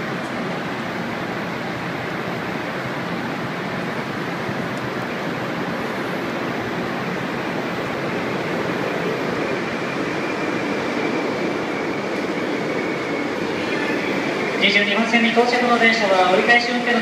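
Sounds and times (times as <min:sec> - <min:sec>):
train rushing into platform: 0:00.0 - 0:17.0
high squeal of train brakes: 0:10.0 - 0:15.1.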